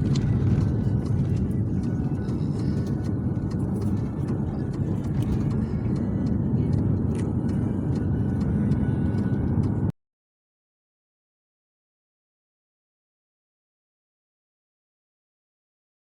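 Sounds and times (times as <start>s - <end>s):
car road and engine rumble: 0.0s - 9.9s.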